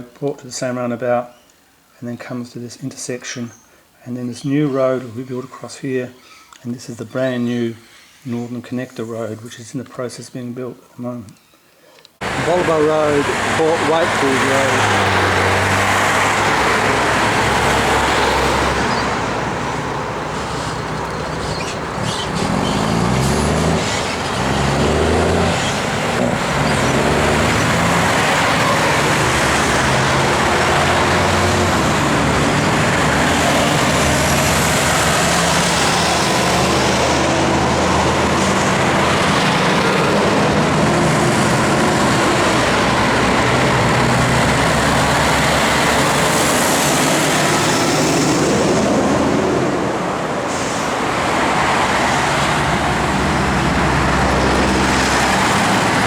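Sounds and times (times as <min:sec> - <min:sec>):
engine accelerating through gears: 0:12.2 - 0:49.7, 0:50.5 - 0:56.0
heavy vehicle engines: 0:12.2 - 0:56.0
road traffic passing: 0:12.2 - 0:56.0.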